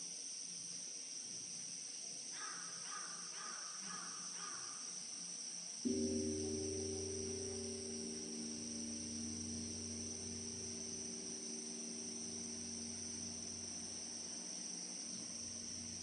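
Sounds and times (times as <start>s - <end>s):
insects chirring: 0.0s - 16.0s
temple bell hum: 5.9s - 16.0s.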